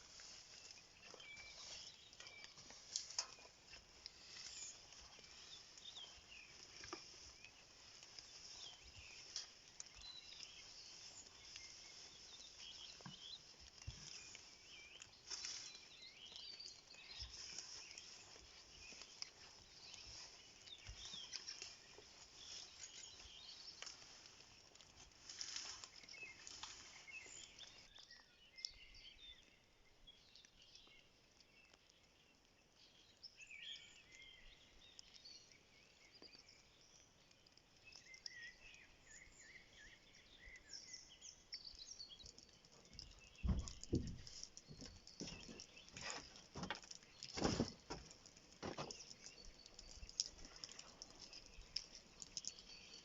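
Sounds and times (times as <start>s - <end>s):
quiet rural background: 0.0s - 53.0s
small birds chirping: 0.0s - 53.0s.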